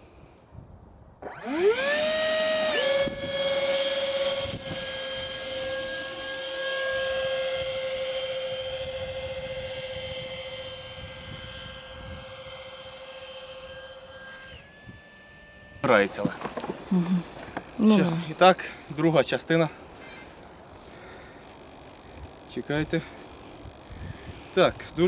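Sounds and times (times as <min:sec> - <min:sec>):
electric ducted fan whining: 0:01.1 - 0:25.0.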